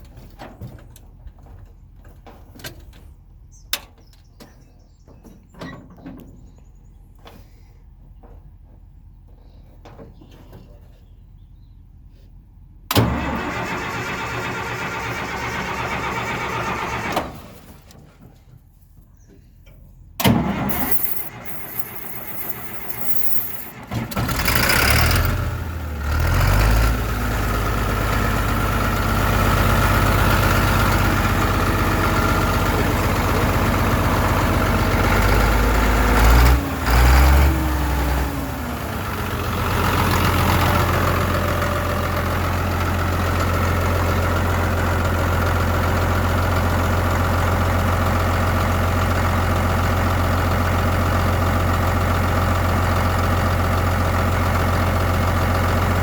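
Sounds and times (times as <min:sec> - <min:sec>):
bulldozer diesel engine running: 0:20.5 - 0:56.0.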